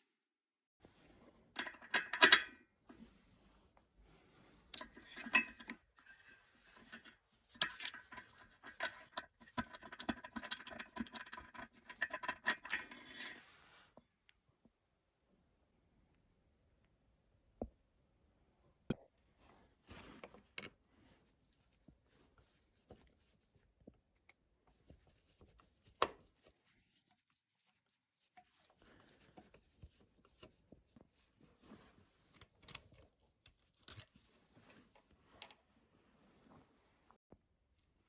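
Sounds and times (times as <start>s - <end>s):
rubbing or scraping: 9.6s - 13.9s.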